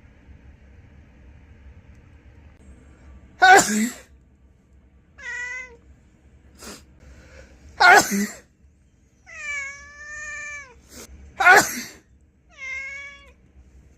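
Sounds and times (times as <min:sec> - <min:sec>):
person sneezing loudly: 0:03.4 - 0:04.1, 0:07.8 - 0:08.5, 0:11.0 - 0:12.0
cat meowing: 0:05.2 - 0:05.8, 0:09.3 - 0:10.8, 0:12.5 - 0:13.4.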